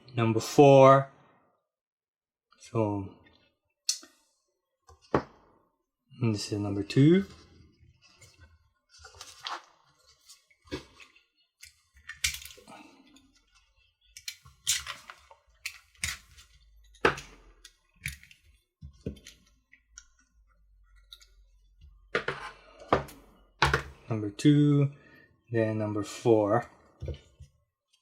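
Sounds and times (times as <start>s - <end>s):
plastic parts clicking and snipping: 10.7s - 20.2s.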